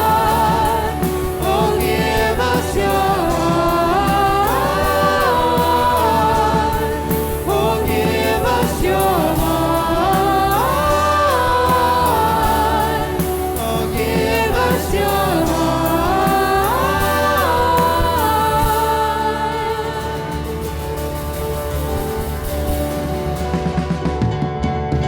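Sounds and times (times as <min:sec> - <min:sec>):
band accompaniment: 0:00.0 - 0:25.0.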